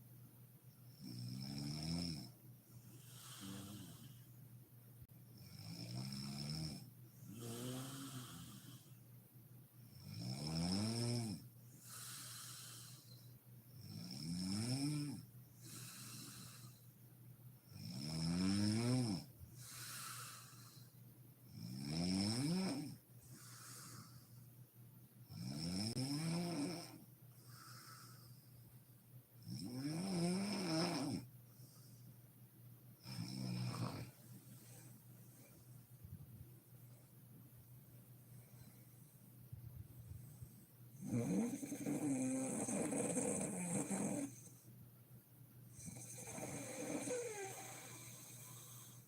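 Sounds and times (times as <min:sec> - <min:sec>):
woman snoring: 0:03.0 - 0:04.2, 0:05.4 - 0:08.9, 0:10.0 - 0:13.2, 0:13.8 - 0:16.8, 0:17.7 - 0:20.7, 0:21.6 - 0:24.2, 0:25.3 - 0:28.2, 0:29.5 - 0:31.3, 0:33.0 - 0:34.1, 0:41.0 - 0:44.5, 0:45.8 - 0:49.0.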